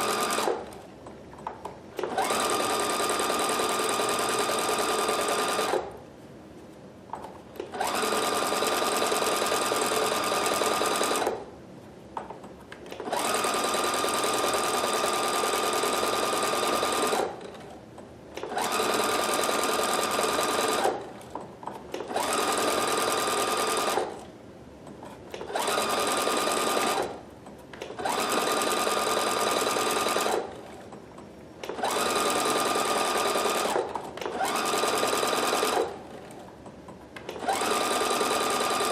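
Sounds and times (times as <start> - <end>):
sewing machine whining: 0.0 - 0.7, 2.0 - 5.9, 7.6 - 11.4, 13.0 - 17.7, 18.4 - 21.1, 21.9 - 24.3, 25.3 - 27.2, 27.9 - 30.8, 31.6 - 36.3, 37.3 - 38.9.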